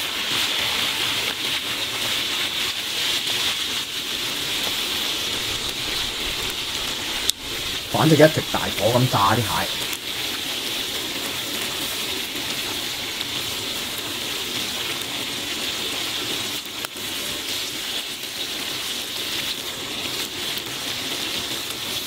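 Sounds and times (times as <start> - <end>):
crab deep-frying in oil: 0.0 - 22.0.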